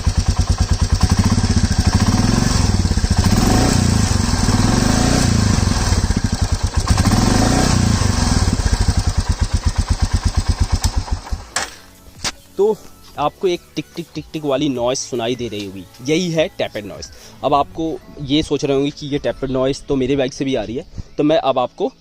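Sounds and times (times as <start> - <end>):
motorcycle engine idling: 0.0 - 12.0.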